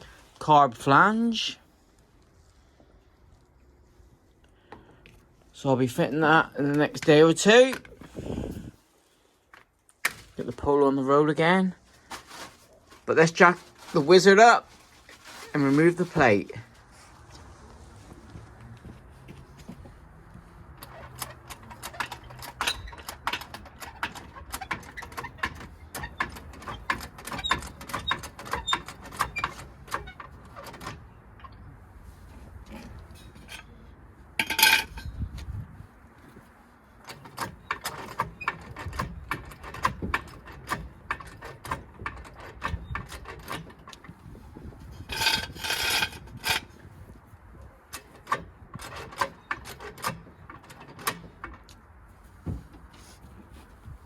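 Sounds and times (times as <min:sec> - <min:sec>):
metallic clicking and rattling: 0:20.8 - 0:31.7, 0:34.4 - 0:35.5, 0:37.0 - 0:44.2, 0:44.9 - 0:46.8, 0:47.9 - 0:51.9
ringing metal clatter: 0:20.8 - 0:31.7, 0:32.6 - 0:35.2, 0:44.9 - 0:46.8.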